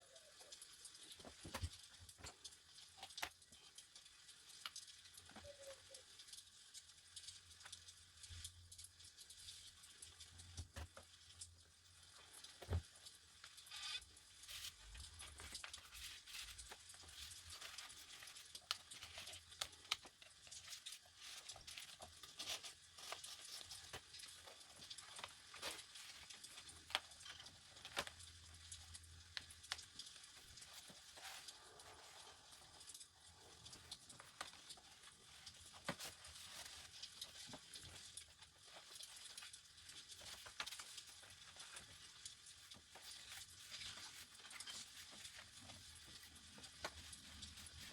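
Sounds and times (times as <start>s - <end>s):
paper pages turning and rustling: 1.0s - 3.4s, 12.0s - 47.9s.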